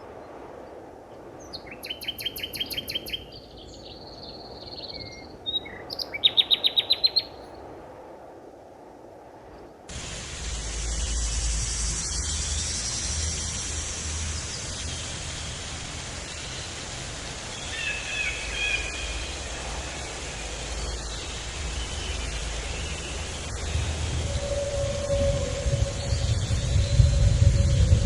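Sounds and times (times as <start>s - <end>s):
steady rushing noise: 0.0s - 28.0s
bird chirping: 1.6s - 4.0s, 4.6s - 7.4s, 10.3s - 27.8s
low rumble: 9.9s - 28.0s.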